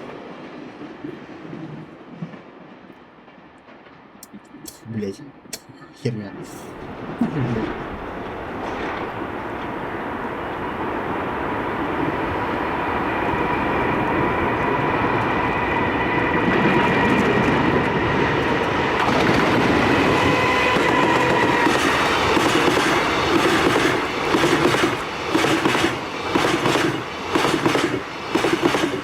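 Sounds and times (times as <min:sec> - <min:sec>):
freight train rumble: 0:00.0 - 0:29.0.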